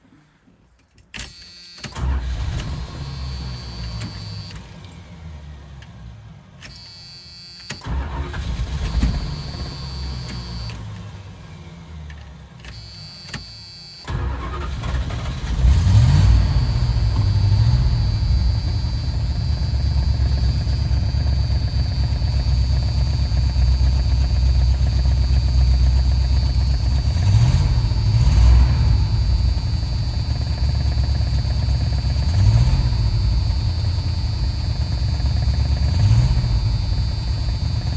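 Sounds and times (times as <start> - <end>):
engine cranking and starting: 0.8 - 6.0, 6.6 - 37.9
engine running with misfire: 1.2 - 37.9
engine revving: 7.6 - 11.0, 14.0 - 37.9.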